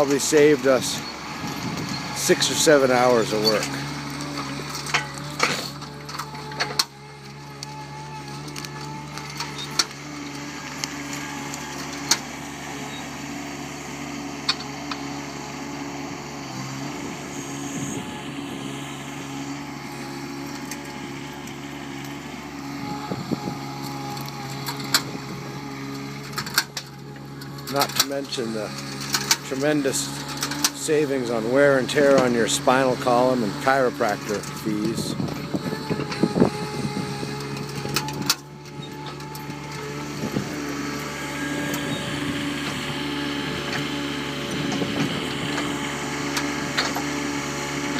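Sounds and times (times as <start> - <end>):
loader engine running: 0.0 - 47.9.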